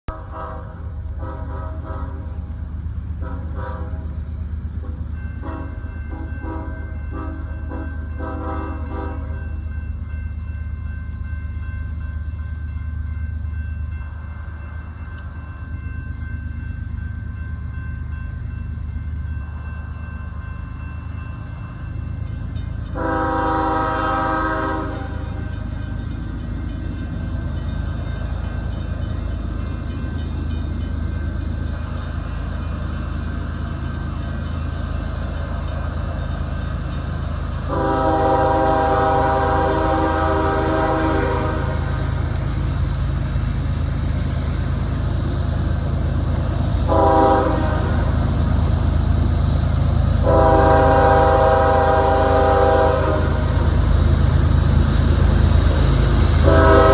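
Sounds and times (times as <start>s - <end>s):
locomotive air horn blasts: 0.1s - 2.4s, 3.2s - 4.2s, 5.4s - 9.4s, 22.9s - 25.5s, 37.7s - 42.0s, 46.9s - 48.2s, 50.2s - 53.7s, 56.4s - 56.9s.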